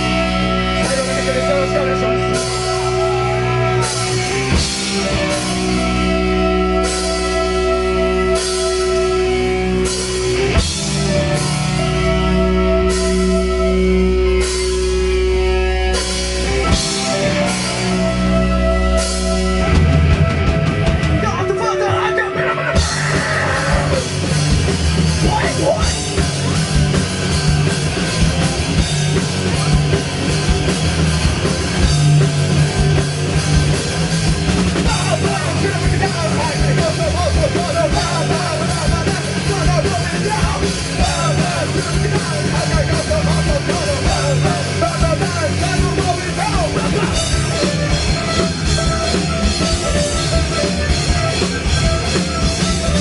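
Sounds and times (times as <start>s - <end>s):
distorted electric guitars: 0.0s - 53.0s
drums: 0.0s - 53.0s
shouted vocals: 2.8s - 3.8s, 21.4s - 24.1s.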